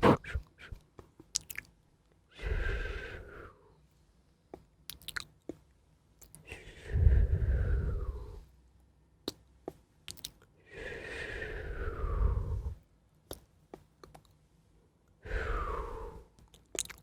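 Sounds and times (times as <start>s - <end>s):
wet mouth clicks: 0.0s - 1.7s, 4.9s - 5.6s, 6.2s - 6.6s, 9.3s - 9.5s, 10.1s - 10.5s, 13.3s - 14.4s, 16.4s - 17.0s
chewing sounds: 1.3s - 1.7s, 4.9s - 5.6s, 10.1s - 10.5s, 16.4s - 17.0s.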